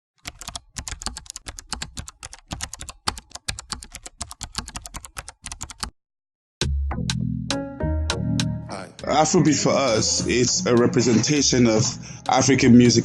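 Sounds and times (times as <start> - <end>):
typing on computer keyboard: 0.2 - 5.9.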